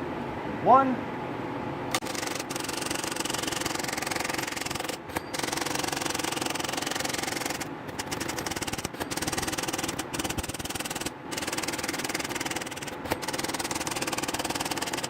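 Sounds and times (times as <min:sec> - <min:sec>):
manual typewriter clatter: 0:04.4 - 0:15.0.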